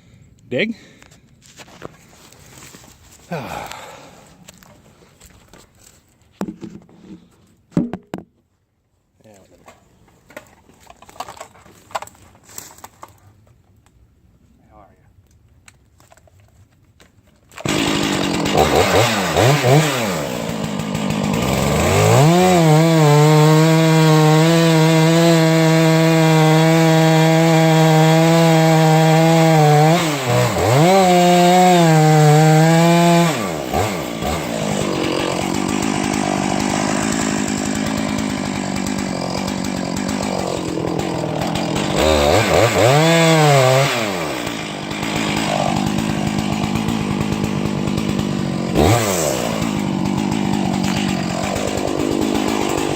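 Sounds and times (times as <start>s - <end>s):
chainsaw revving: 17.6s - 52.9s.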